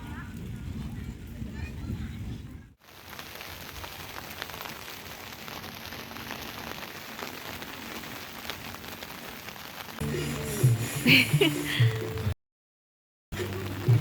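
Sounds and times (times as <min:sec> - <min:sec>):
rain pattering: 0:02.8 - 0:12.4, 0:13.3 - 0:14.0.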